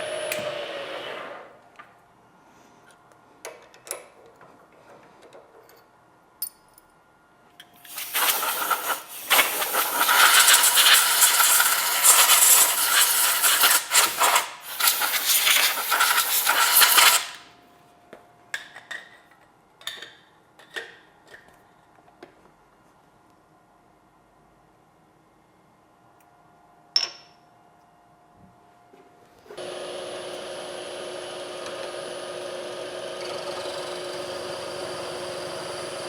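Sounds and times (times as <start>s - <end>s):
loud steady hiss: 7.8s - 17.5s.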